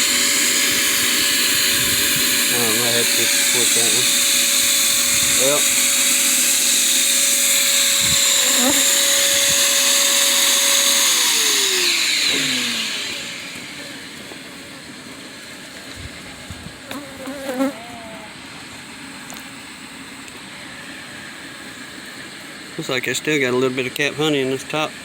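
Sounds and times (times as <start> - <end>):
honeybees buzzing: 0.0 - 13.2, 16.8 - 18.4
vacuum whining: 0.0 - 19.8.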